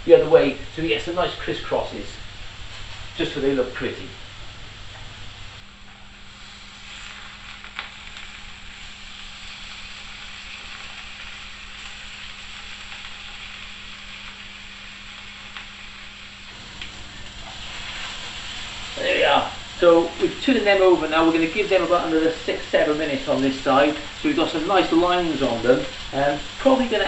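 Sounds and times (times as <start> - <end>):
chicken sizzling in oil: 0.0 - 27.0.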